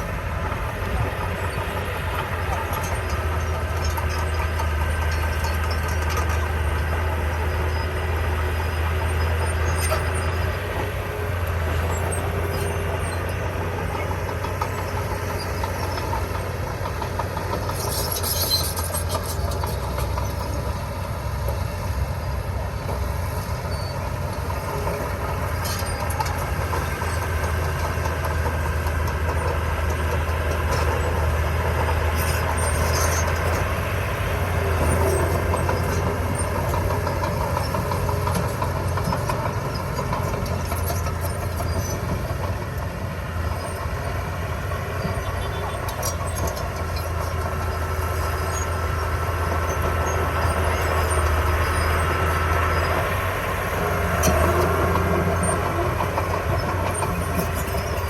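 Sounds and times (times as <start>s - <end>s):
construction machinery engine drone: 0.0s - 58.0s
high-pitched metallic squeaks: 17.5s - 20.5s.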